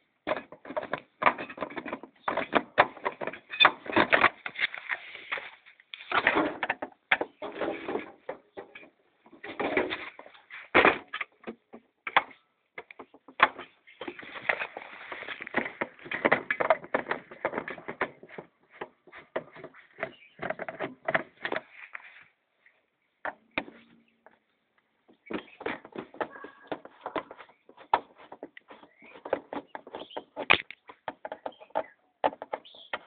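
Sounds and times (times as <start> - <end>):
scraping: 13.4 - 22.3, 25.2 - 33.0.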